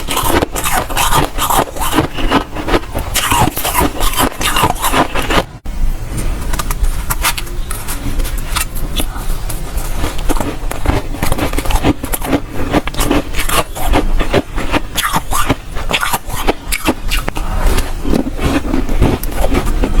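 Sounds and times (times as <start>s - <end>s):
chewing crunchy frost: 0.0s - 5.5s, 6.5s - 20.0s.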